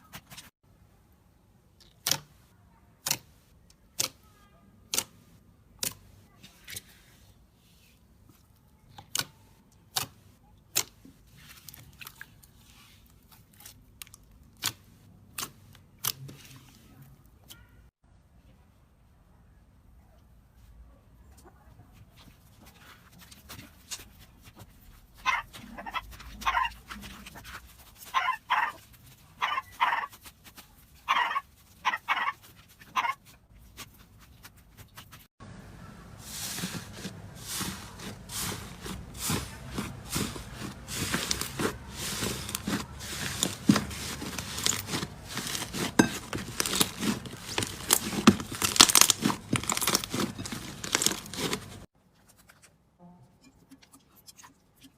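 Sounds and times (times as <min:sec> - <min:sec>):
slime squelching: 0:04.8 - 0:17.8, 0:22.2 - 0:35.3, 0:35.9 - 0:52.8.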